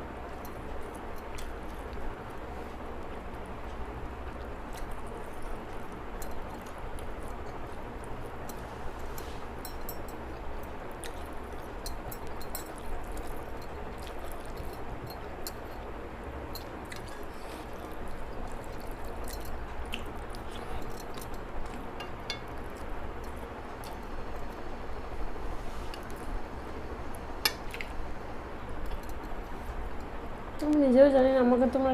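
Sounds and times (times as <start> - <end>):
steady background hiss: 0.0 - 31.9
chewing: 10.4 - 15.9, 16.6 - 24.6.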